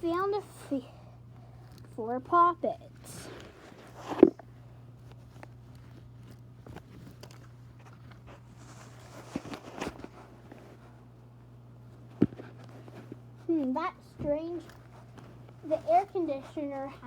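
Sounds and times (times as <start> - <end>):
soft taps and rustles: 2.9 - 11.2, 11.8 - 17.0.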